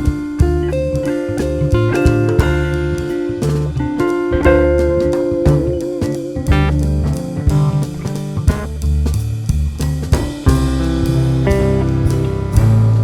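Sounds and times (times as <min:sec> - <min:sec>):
rock band music: 0:00.0 - 0:13.0.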